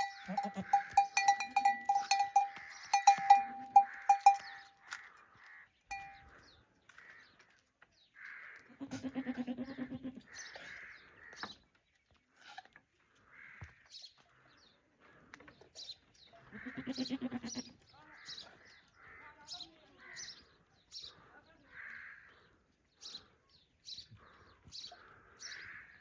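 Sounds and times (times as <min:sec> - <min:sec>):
goat bleating: 0:00.0 - 0:04.5, 0:08.7 - 0:10.4, 0:16.4 - 0:17.8
small birds chirping: 0:00.0 - 0:08.2, 0:10.2 - 0:26.0.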